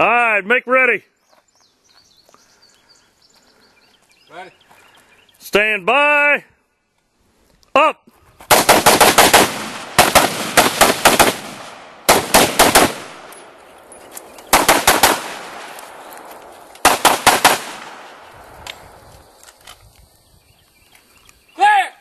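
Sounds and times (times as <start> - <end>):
rapid gunfire: 8.5 - 13.2, 14.5 - 15.7, 16.8 - 18.1.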